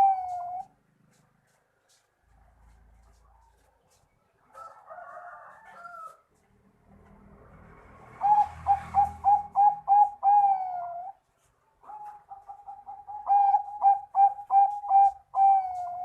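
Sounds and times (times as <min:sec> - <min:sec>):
dove cooing: 0:00.0 - 0:00.8, 0:08.2 - 0:11.2, 0:11.8 - 0:16.0.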